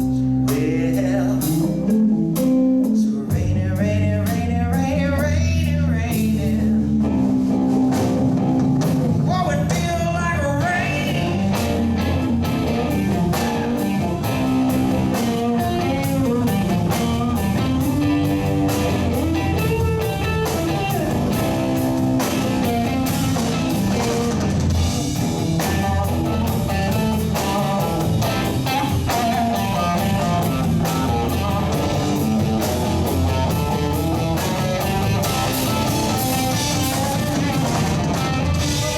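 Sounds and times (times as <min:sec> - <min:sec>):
guitar lines: 0:00.0 - 0:03.4, 0:04.0 - 0:38.9
drum kit steady beat: 0:00.0 - 0:38.9
live blues band: 0:00.0 - 0:38.9.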